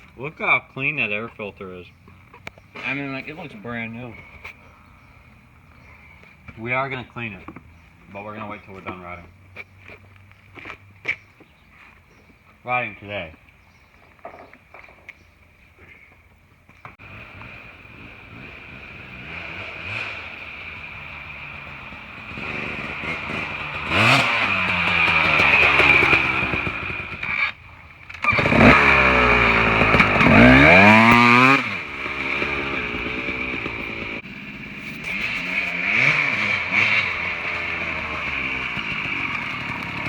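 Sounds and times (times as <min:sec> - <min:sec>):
dirt bike engine revving: 0:17.0 - 0:40.0.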